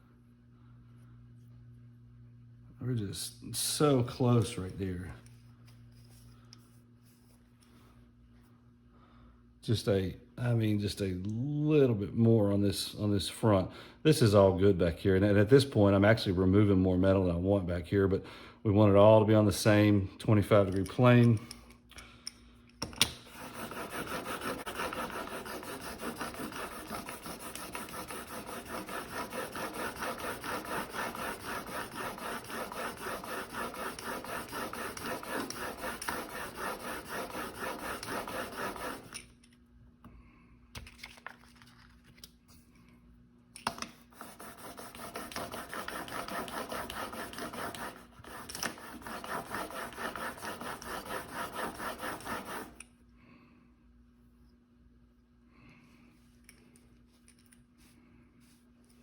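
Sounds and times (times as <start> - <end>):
blade rasping on sandpaper: 23.3 - 39.2, 44.2 - 52.8.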